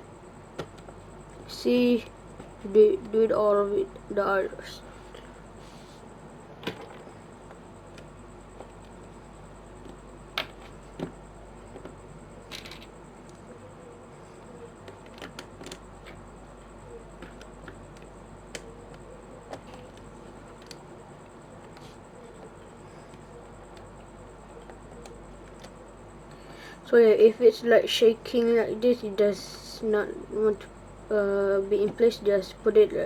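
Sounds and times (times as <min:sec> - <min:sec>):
faint steady hum: 0:00.0 - 0:33.0
plastic puzzle pieces clicking: 0:11.7 - 0:12.9, 0:14.8 - 0:16.2.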